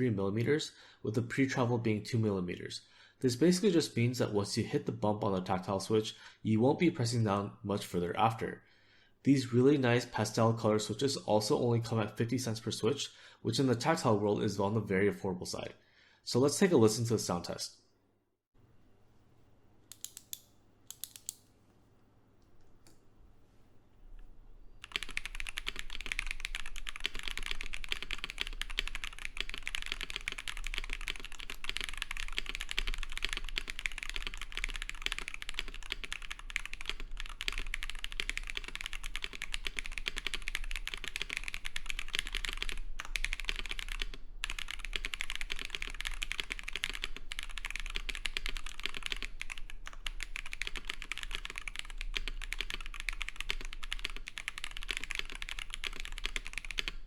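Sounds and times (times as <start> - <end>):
fast mechanical keyboard typing: 24.8 - 57.0.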